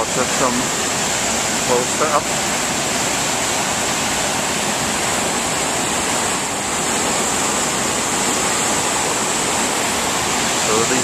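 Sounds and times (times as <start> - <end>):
river water rushing over a drop: 0.0 - 11.0.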